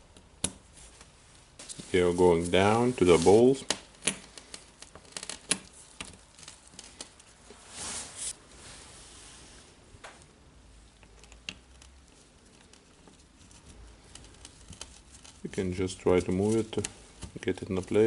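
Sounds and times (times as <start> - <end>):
short rustle: 0.8 - 3.7, 6.6 - 9.7.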